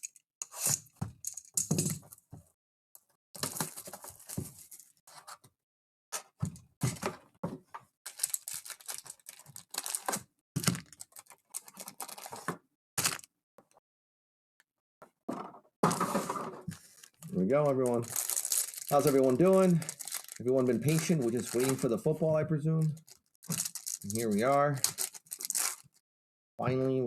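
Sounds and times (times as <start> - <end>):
plastic wrap tearing and crinkling: 8.1 - 13.3, 16.7 - 21.9, 22.9 - 26.0.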